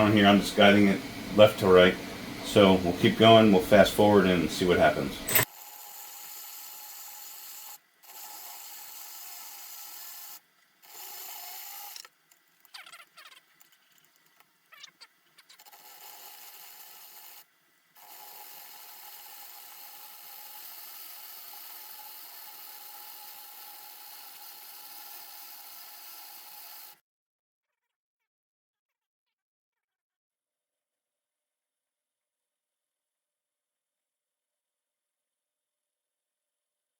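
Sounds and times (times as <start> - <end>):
drill spinning filament spool: 0.0 - 27.0.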